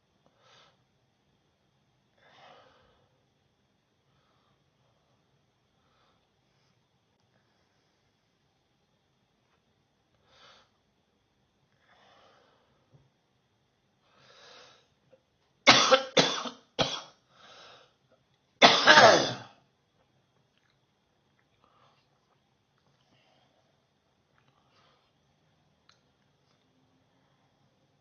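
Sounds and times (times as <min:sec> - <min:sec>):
person coughing: 0:15.7 - 0:17.2, 0:18.6 - 0:19.6.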